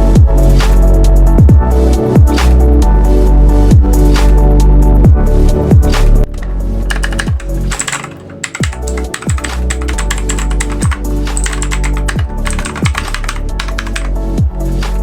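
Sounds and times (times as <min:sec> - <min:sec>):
electronic background music: 0:05.2 - 0:15.0
mechanical keyboard typing: 0:06.3 - 0:14.2.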